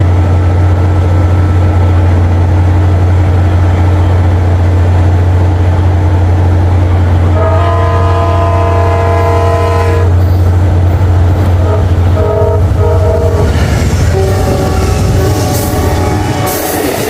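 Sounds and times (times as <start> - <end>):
diesel locomotive rumble: 0.0 - 17.0
train air horn chord: 7.3 - 10.1, 11.6 - 13.5, 14.1 - 16.8.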